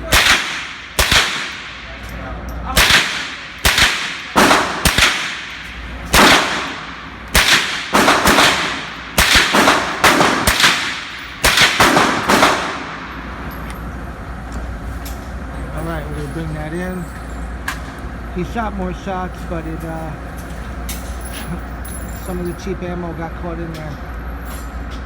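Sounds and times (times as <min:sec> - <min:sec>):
rifle shots: 0:00.0 - 0:02.0, 0:02.7 - 0:13.2.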